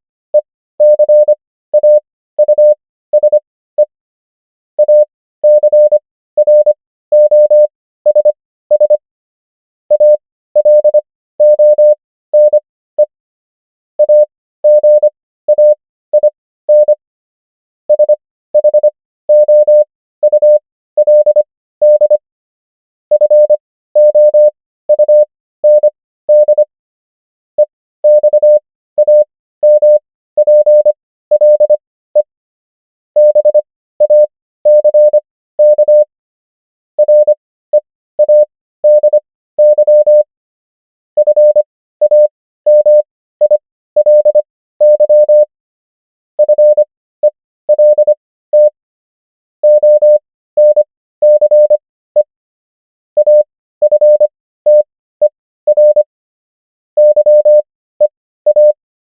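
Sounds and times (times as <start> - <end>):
morse code beeps: 0.4 - 3.9, 4.8 - 9.0, 9.9 - 13.1, 14.0 - 17.0, 17.9 - 22.2, 23.1 - 26.7, 28.0 - 32.3, 33.2 - 36.1, 37.0 - 40.3, 41.2 - 45.5, 46.4 - 48.8, 49.6 - 52.3, 53.2 - 56.1, 57.0 - 58.8.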